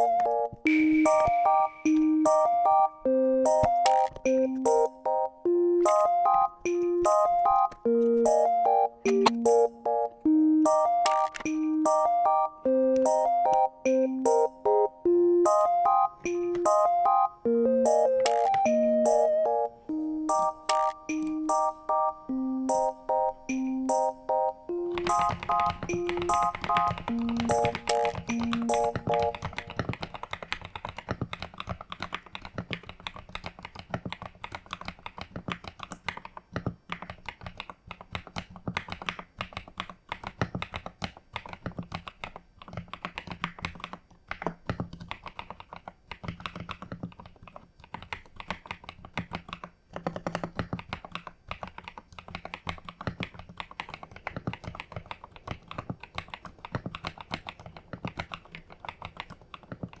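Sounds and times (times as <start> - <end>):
mechanical keyboard typing: 0.0 - 60.0.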